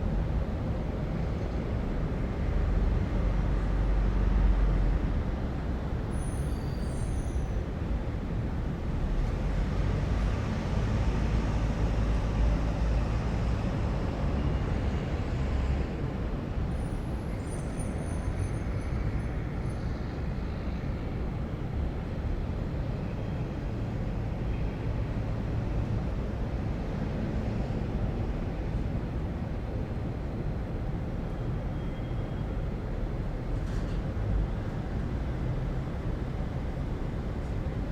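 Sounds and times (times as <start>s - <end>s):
road traffic rumble: 7.5s - 37.9s.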